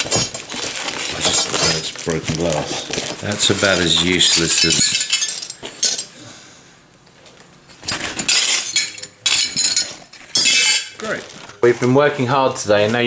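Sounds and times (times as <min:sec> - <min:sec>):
glass clinking and rattling: 0:00.0 - 0:01.8, 0:03.4 - 0:06.1, 0:07.7 - 0:11.3.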